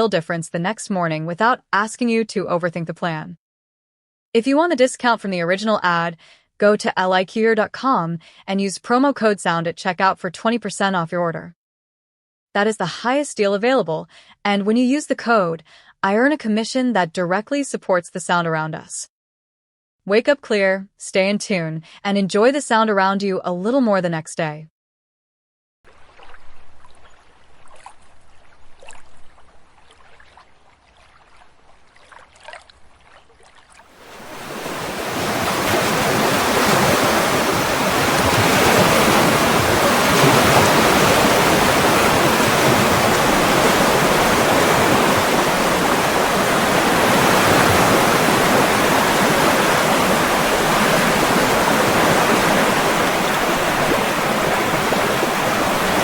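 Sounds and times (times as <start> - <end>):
rushing water: 28.8 - 56.0.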